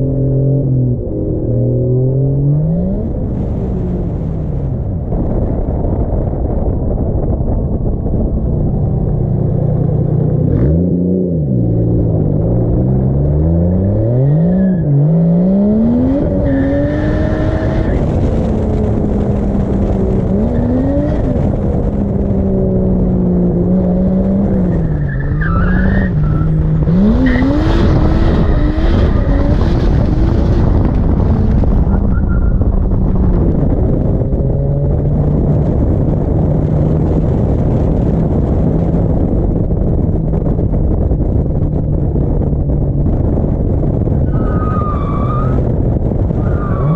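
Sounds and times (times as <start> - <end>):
turbocharged car engine revving: 9.4 - 32.4.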